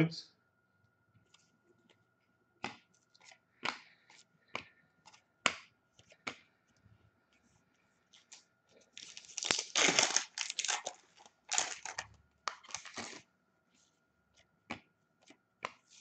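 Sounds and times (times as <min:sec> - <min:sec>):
wrapper tearing and crinkling: 0:09.0 - 0:13.2.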